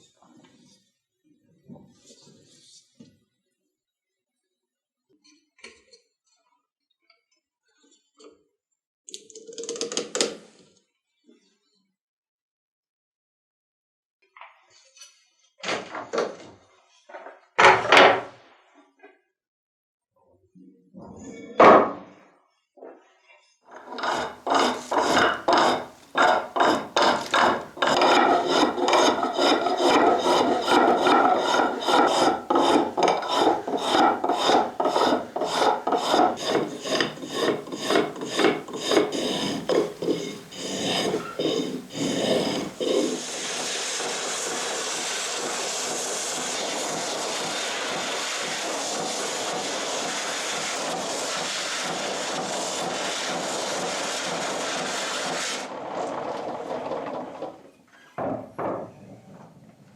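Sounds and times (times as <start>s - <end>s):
hand file strokes: 23.7s - 56.0s.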